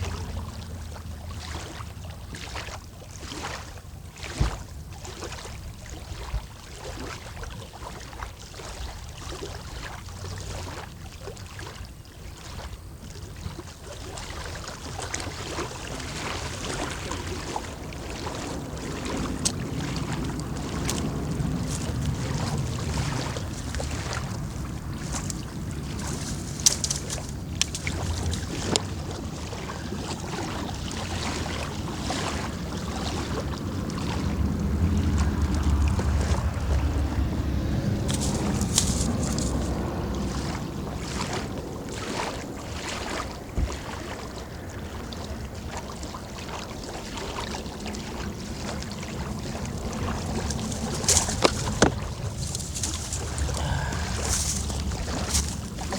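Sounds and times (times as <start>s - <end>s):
water lapping: 0.0s - 55.9s
wind buffeting microphone: 14.9s - 45.4s, 47.7s - 55.9s.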